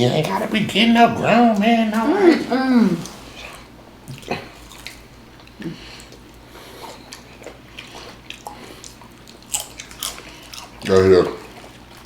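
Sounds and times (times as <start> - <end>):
chewing and biting food: 3.0 - 12.0
small food crunches: 6.9 - 12.0.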